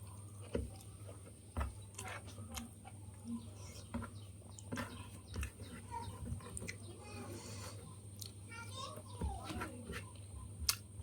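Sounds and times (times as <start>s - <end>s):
person chewing with wet smacks: 10.2s - 10.9s.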